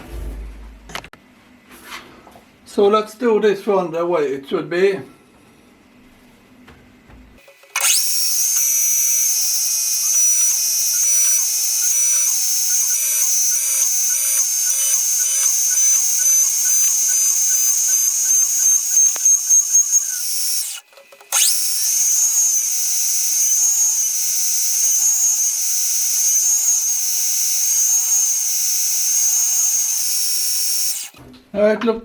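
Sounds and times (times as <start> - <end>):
milling spindle whine: 7.7 - 31.2.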